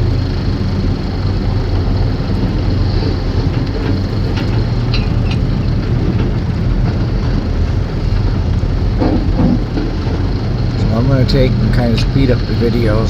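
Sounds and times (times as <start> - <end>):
excavator diesel engine running: 0.0 - 13.0.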